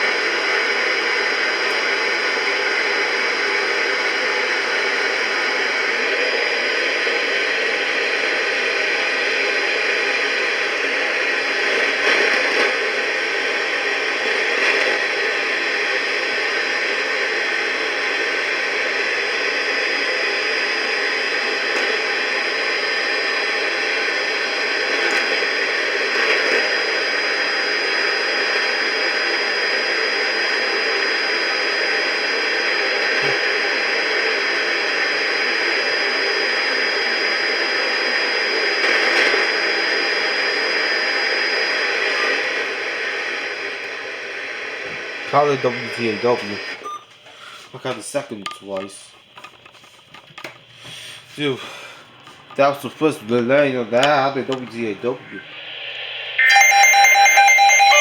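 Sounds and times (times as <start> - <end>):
radio static hiss: 0.0 - 58.0
thin high whistle: 55.4 - 58.0.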